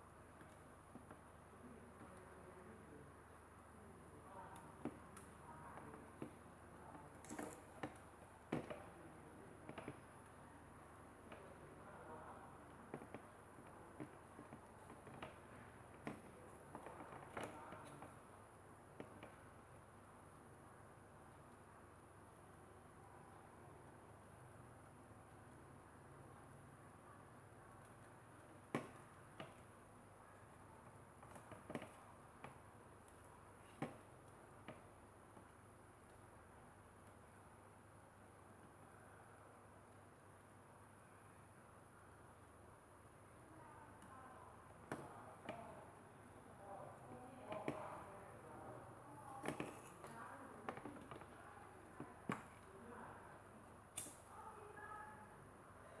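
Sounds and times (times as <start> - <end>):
faint steady hiss: 0.0 - 56.0.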